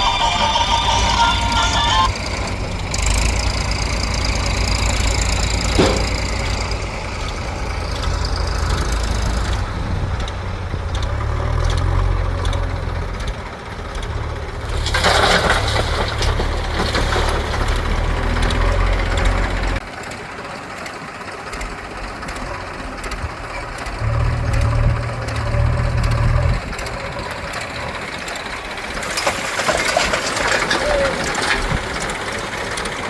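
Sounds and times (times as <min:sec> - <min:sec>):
heavy diesel engine running: 0:00.0 - 0:33.0
sharp metal clank: 0:05.7 - 0:06.7.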